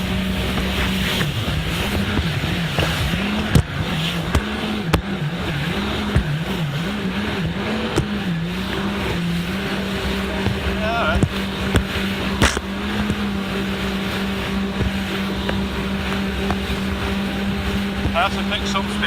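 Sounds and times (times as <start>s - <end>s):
jet ski engine at low speed: 0.0s - 19.0s
sharp knocks: 10.4s - 13.3s.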